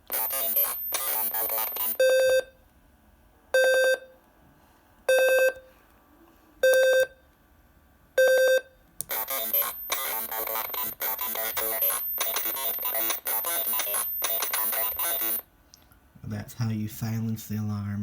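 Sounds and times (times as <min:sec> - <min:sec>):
harsh buzzy electronic burst: 0:00.0 - 0:02.0, 0:09.1 - 0:15.5
alarm buzzer beeping: 0:00.0 - 0:02.5, 0:08.2 - 0:15.5.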